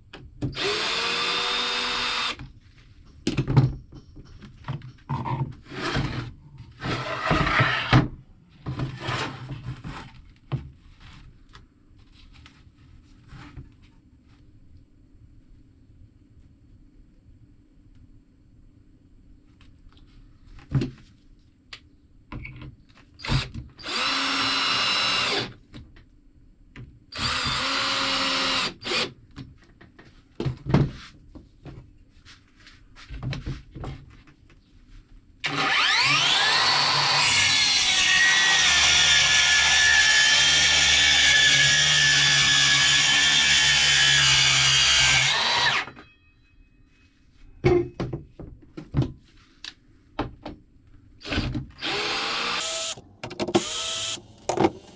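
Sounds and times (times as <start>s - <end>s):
power tool whining: 0.6s - 2.4s, 35.4s - 46.0s, 51.8s - 54.9s
knocks and clicks handling wood: 53.2s - 53.7s, 54.4s - 54.9s.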